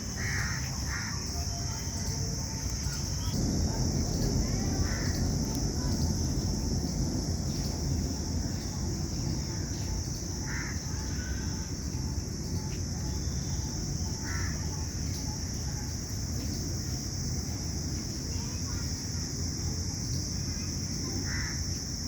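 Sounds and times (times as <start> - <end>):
constant low rumble: 0.0 - 22.0
steady high-pitched hiss: 0.0 - 22.0.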